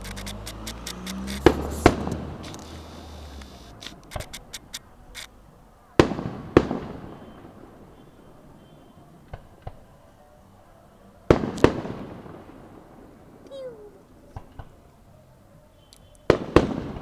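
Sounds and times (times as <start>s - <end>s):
loud fireworks bangs: 0.0s - 9.8s, 11.3s - 13.4s, 16.2s - 17.0s
fireworks crackling pops: 0.0s - 9.9s, 11.3s - 13.6s, 16.0s - 17.0s
faint distant pops: 0.0s - 10.1s.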